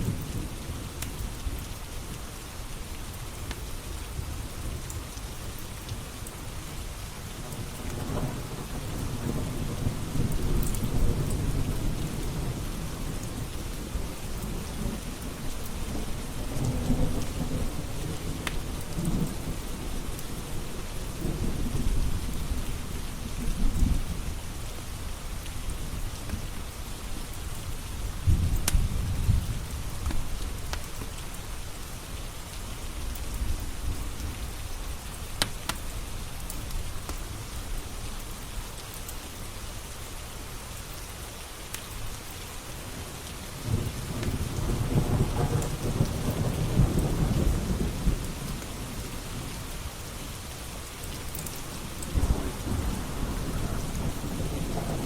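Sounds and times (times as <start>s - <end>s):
steady rain: 0.0s - 55.0s
thunder rumbling: 28.2s - 30.6s, 43.6s - 49.4s, 51.7s - 55.0s.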